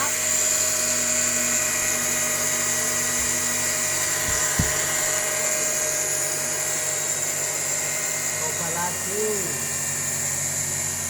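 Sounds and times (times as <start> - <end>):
cutting machine motor whine: 0.0 - 11.0
short low knocks: 3.1 - 5.2.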